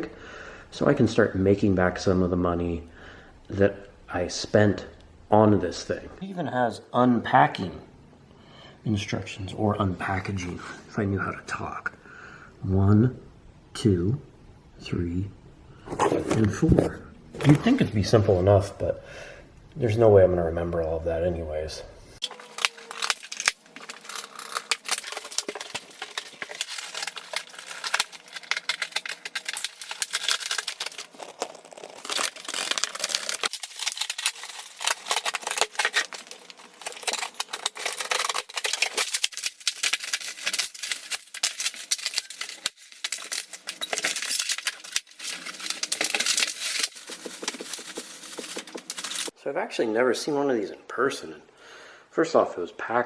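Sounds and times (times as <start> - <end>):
cardboard box crinkling and tearing: 22.3 - 49.3.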